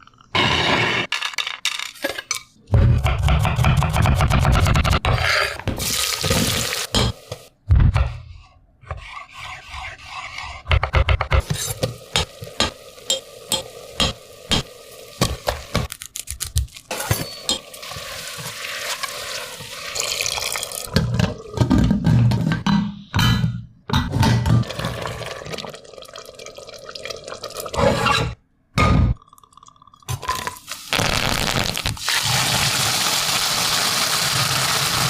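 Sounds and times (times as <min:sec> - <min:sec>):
water running and splashing: 0:11.7 - 0:15.9
utensils clinking against pot: 0:16.9 - 0:18.0.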